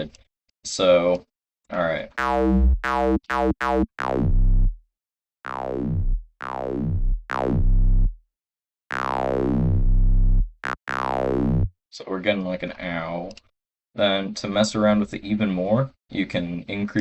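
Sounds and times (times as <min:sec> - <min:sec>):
synthesized squelch bass: 0:02.2 - 0:04.8, 0:05.5 - 0:08.2, 0:08.9 - 0:11.7.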